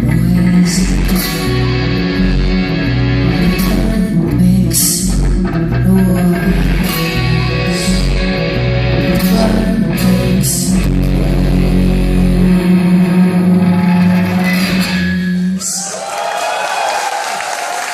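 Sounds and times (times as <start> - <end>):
bass guitar: 0.0 - 15.8
electric guitar: 0.0 - 15.8
audience applause: 15.8 - 17.9.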